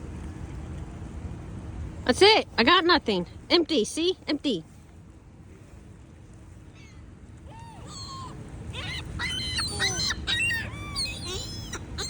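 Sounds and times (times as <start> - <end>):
seagulls squawking: 6.8 - 12.0.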